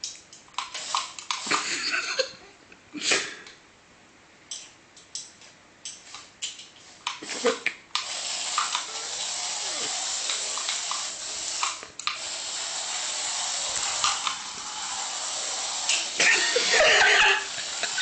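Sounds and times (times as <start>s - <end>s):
toy car motor hissing: 0.6s - 1.9s, 7.2s - 18.0s
loud rough noise: 8.9s - 18.0s.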